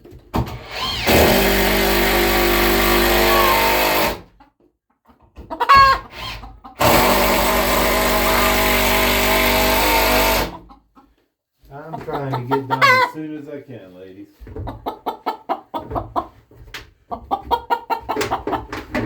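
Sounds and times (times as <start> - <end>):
power drill driving screws: 0.4 - 4.3, 6.1 - 10.6
hen squawking: 3.1 - 3.8, 12.1 - 13.2.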